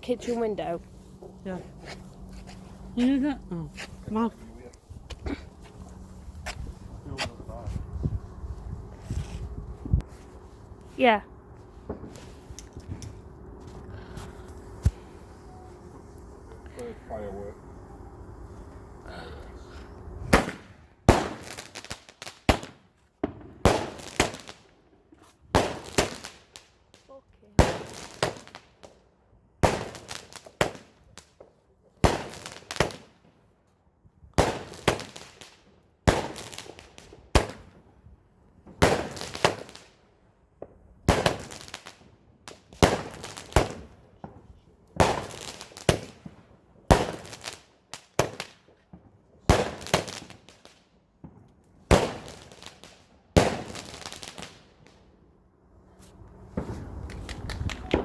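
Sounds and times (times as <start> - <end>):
firework bangs with crackle: 11.6 - 13.0, 20.2 - 24.7, 25.4 - 26.7, 27.6 - 29.0, 29.6 - 33.3, 34.4 - 37.9, 38.6 - 39.9, 40.6 - 55.0, 56.4 - 58.0.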